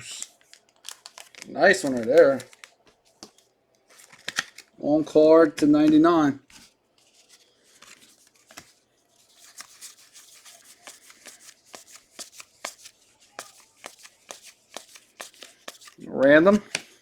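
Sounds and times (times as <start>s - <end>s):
trading cards flipped by hand: 0.1s - 4.7s, 5.5s - 16.0s, 16.6s - 17.0s
soft rustling: 6.4s - 16.0s.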